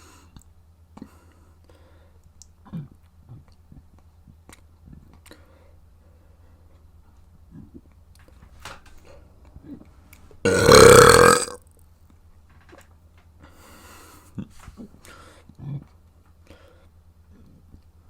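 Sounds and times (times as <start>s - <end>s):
person burping: 10.5s - 11.6s.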